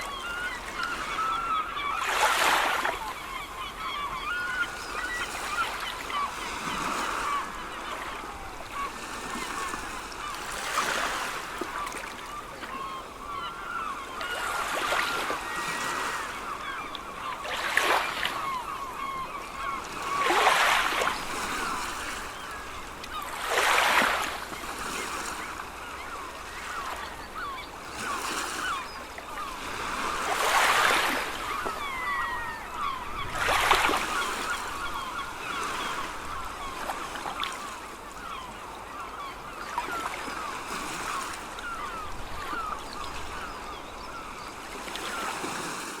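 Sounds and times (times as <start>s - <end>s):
seagulls calling: 0.0s - 46.0s
sea waves washing in: 44.9s - 46.0s.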